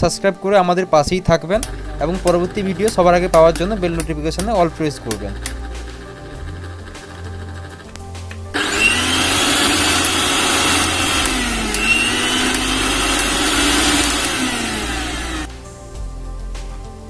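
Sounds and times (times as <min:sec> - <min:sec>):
electric mixer grinder motor running: 0:08.5 - 0:15.5.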